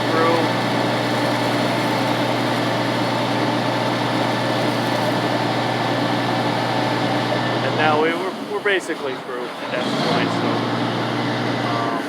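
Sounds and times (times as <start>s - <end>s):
chainsaw cutting tree trunk: 0.0s - 7.9s.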